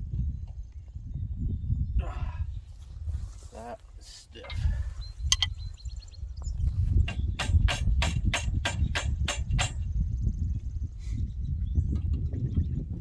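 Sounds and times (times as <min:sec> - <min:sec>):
hand tool clicking on metal: 0:05.3 - 0:05.5.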